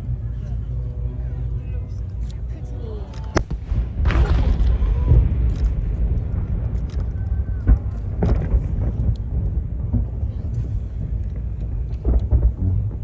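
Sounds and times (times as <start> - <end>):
crowd voices: 0.0 - 13.0
fireworks booming: 3.4 - 13.0.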